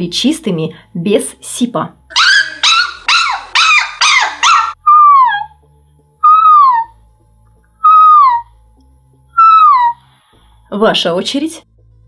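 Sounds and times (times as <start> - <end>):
woman whimpering in falsetto: 6.2 - 6.9, 7.8 - 8.5, 9.4 - 10.0.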